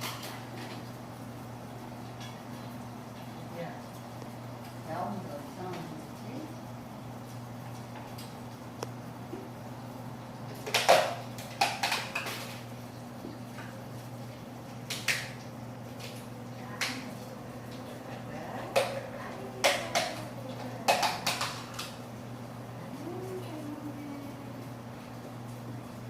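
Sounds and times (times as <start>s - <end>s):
steady low hum: 12.5s - 26.0s.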